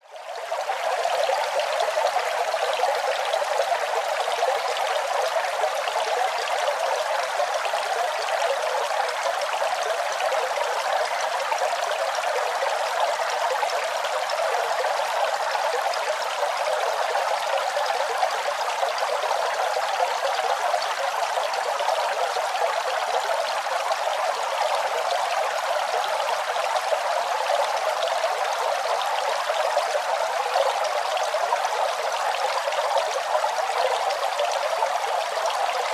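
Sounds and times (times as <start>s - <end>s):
fountain water trickling and splashing: 0.0s - 35.9s.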